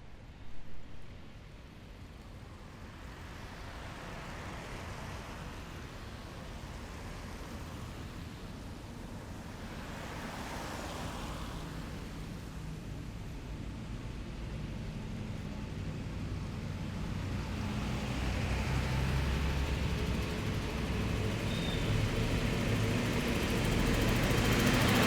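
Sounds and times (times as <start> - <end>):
low engine rumble: 12.6 - 25.0
tyre and road noise: 13.5 - 25.0.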